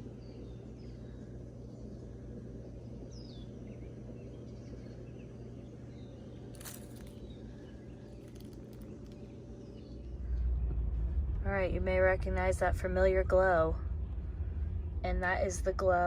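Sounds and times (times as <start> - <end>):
faint bird chirps: 0.0 - 10.8
low background rumble: 0.0 - 16.0.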